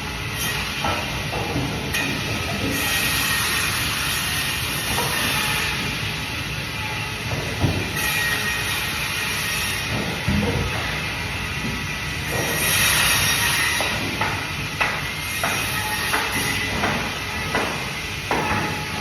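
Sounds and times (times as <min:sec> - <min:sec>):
sharp knocks: 0:13.8 - 0:19.0.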